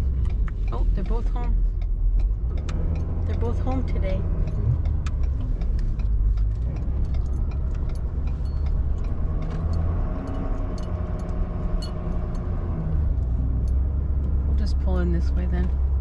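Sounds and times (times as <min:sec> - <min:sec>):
truck engine droning: 0:00.0 - 0:16.0.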